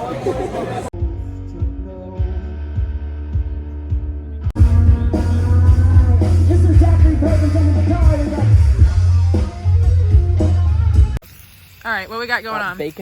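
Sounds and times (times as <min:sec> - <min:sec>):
rock music with sung vocal: 0:00.9 - 0:11.2
heavy bass line: 0:01.0 - 0:11.2.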